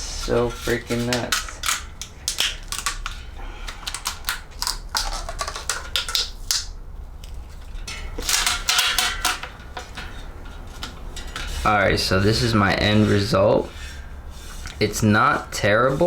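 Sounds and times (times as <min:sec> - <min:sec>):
rim tape crackling and ripping: 0:00.0 - 0:09.6.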